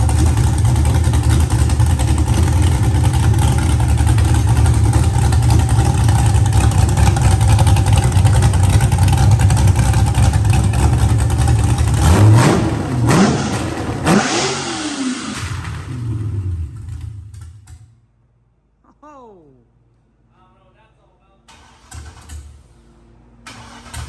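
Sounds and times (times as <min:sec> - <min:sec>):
car engine revving: 0:00.0 - 0:17.8.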